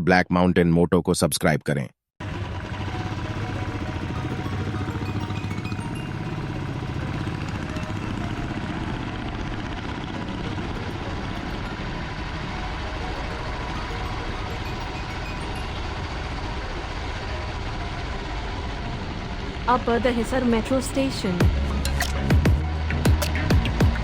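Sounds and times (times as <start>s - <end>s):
faint traction drive tones: 2.2s - 19.8s.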